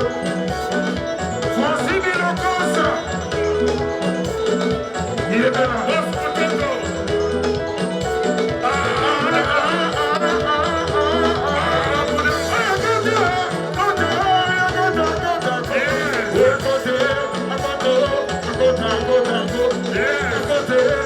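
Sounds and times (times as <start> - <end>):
bass line: 0.0 - 21.0
lead guitar: 0.0 - 21.0
person singing: 0.0 - 21.0
rumba band music: 0.0 - 21.0.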